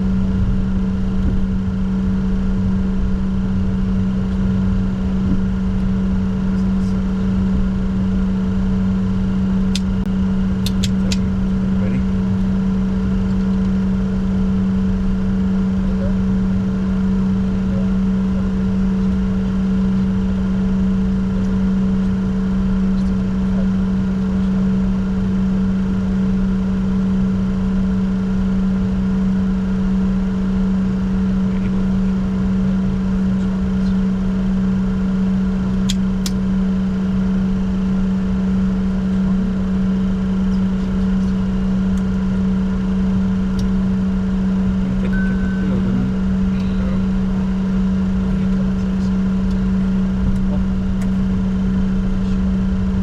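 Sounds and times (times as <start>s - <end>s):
jet cockpit hum and rumble: 0.0s - 53.0s
faint steady tones: 43.2s - 52.4s.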